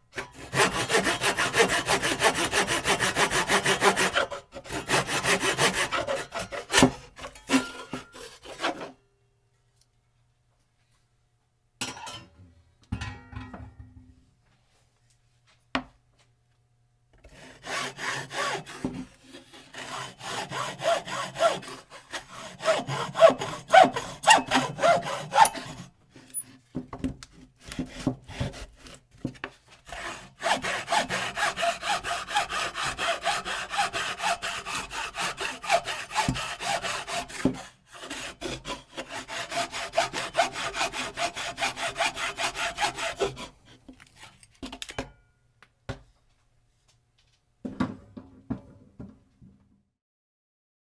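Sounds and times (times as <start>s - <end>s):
hand saw cutting wood: 0.2s - 9.0s, 17.2s - 26.6s, 27.3s - 44.5s.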